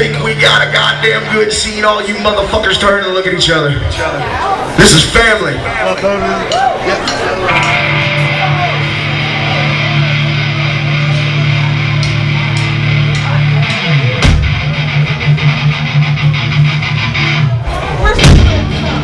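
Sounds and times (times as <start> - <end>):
drums: 6.5 - 19.0
hard rock band playing: 7.4 - 19.0
electric guitar sliding down: 7.5 - 19.0.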